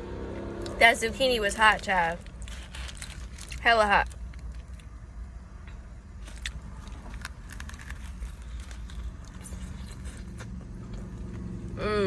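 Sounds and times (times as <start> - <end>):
small crunches and clicks: 2.2 - 5.0, 6.2 - 11.4
person chewing food: 6.2 - 11.8.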